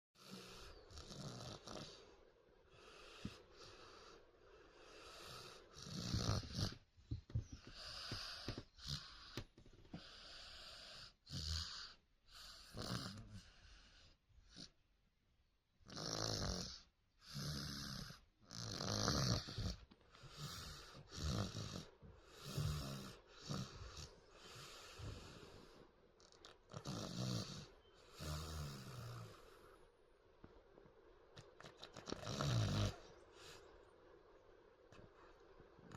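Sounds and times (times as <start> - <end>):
girl snoring: 0.2 - 2.1, 5.1 - 6.8, 15.9 - 19.8, 20.4 - 25.5, 26.7 - 29.5, 31.9 - 33.1.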